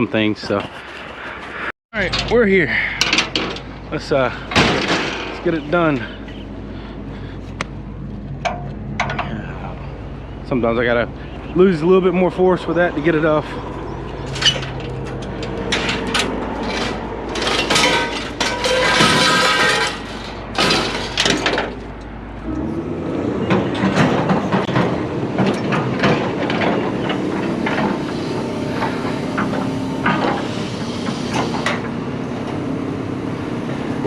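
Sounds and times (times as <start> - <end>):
scrap metal clanking: 2.0 - 7.6, 13.1 - 22.6, 23.4 - 32.6
low engine hum: 2.0 - 18.6, 19.9 - 34.0.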